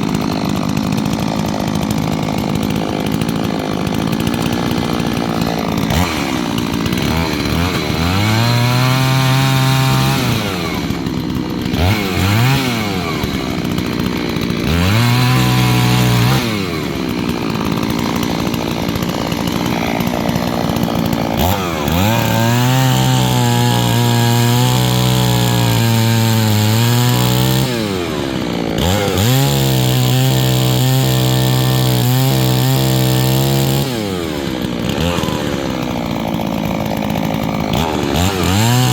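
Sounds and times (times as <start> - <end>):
chainsaw revving: 0.0 - 38.9.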